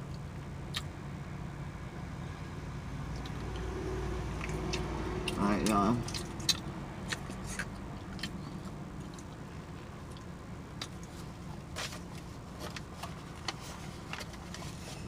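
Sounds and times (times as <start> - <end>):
low hum in car cabin: 0.0 - 15.0
small handling noises: 10.1 - 15.0.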